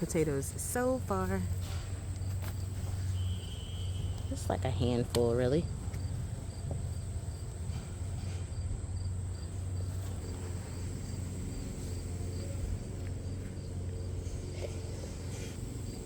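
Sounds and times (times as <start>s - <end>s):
insects chirping: 0.0s - 16.0s
steady low rumble: 3.9s - 16.0s.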